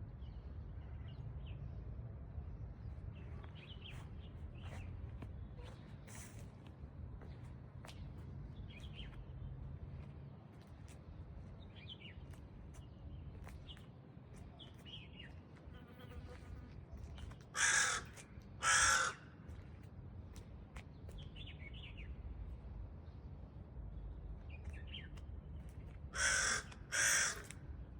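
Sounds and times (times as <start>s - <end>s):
low background rumble: 0.0s - 15.5s, 16.8s - 27.9s
harsh bird calls: 17.6s - 19.2s, 26.2s - 27.5s.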